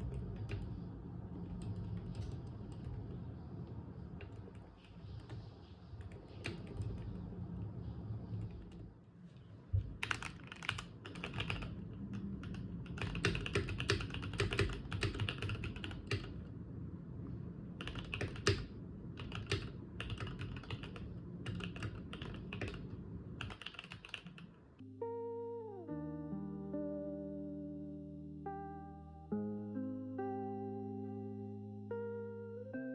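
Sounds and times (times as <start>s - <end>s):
mechanical keyboard typing: 6.1s - 7.2s, 10.0s - 16.4s, 17.8s - 24.5s.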